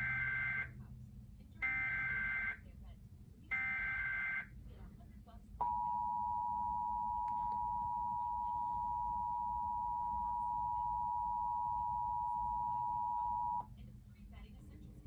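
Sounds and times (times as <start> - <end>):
steady two-tone alert beep: 5.6 - 13.6.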